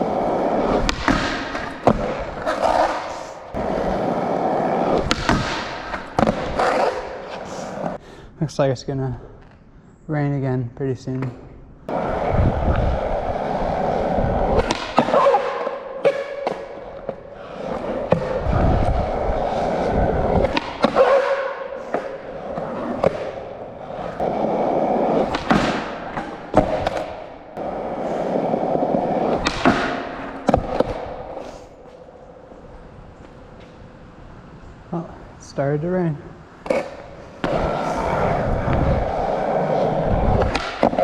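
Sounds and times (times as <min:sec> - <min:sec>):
skateboard clacking and landing: 0:00.0 - 0:08.0, 0:11.9 - 0:32.0, 0:36.6 - 0:41.0
skateboard wheels rolling: 0:00.0 - 0:08.0, 0:11.9 - 0:34.9, 0:36.4 - 0:41.0.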